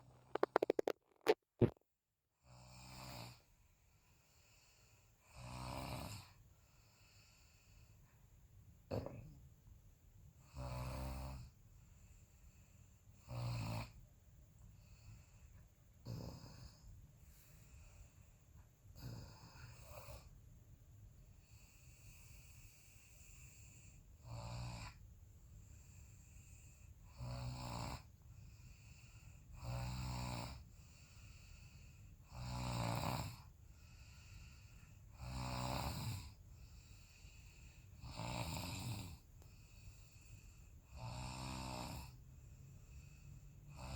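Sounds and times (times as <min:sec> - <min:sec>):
person snoring: 0:00.0 - 0:01.8, 0:16.0 - 0:16.8, 0:35.2 - 0:36.4, 0:40.9 - 0:42.2.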